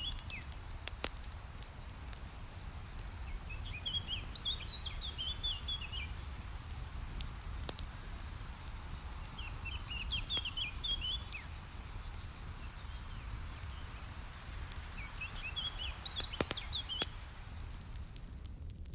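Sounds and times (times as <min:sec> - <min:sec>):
campfire crackling: 0:00.0 - 0:18.9
songbird chirping: 0:03.1 - 0:06.4, 0:09.0 - 0:17.9.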